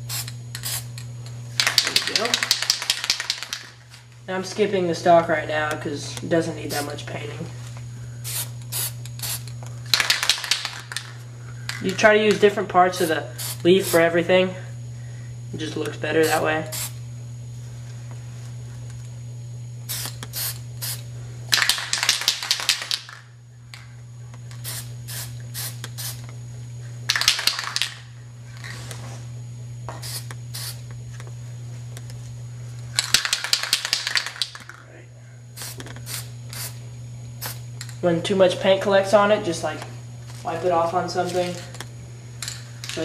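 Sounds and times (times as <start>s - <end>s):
spray paint can hissing: 0.0s - 1.0s, 1.6s - 3.7s, 8.2s - 11.2s, 12.9s - 14.0s, 16.2s - 17.0s, 19.9s - 21.0s, 24.6s - 26.3s, 29.9s - 30.8s, 35.6s - 36.8s, 37.4s - 37.6s
steady low hum: 0.0s - 43.0s.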